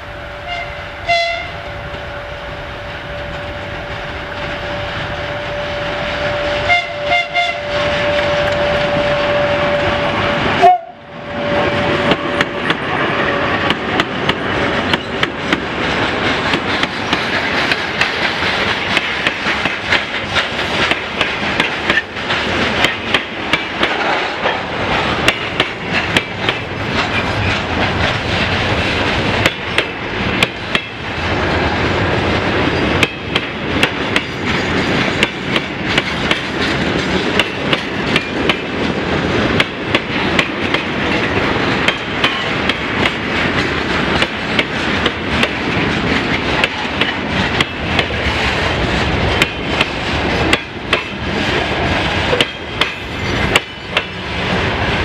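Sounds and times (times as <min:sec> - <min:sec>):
freight wagons rumbling: 0:02.2 - 0:55.0.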